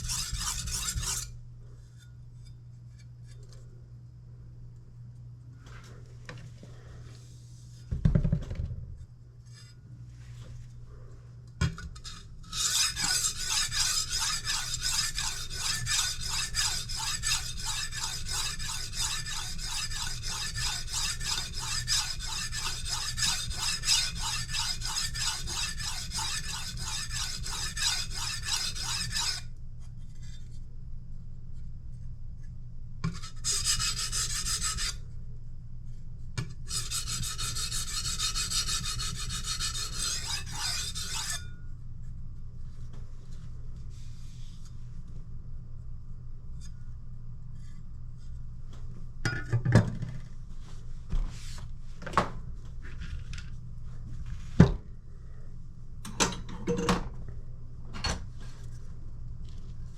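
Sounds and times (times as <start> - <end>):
knife scraping on sharpening stone: 0.0 - 1.3, 12.0 - 29.4, 36.7 - 41.6.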